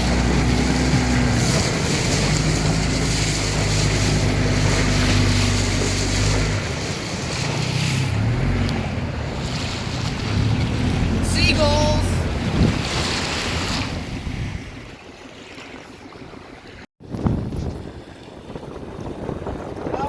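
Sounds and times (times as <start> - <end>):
small outboard motor running: 0.0 - 13.8
wind on microphone: 0.0 - 16.4, 17.0 - 20.0
water noise: 0.0 - 20.0.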